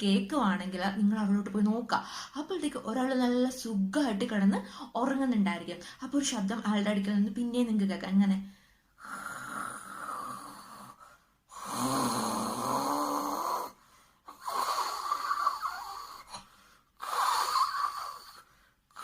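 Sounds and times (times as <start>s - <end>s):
person snoring: 9.0s - 19.0s.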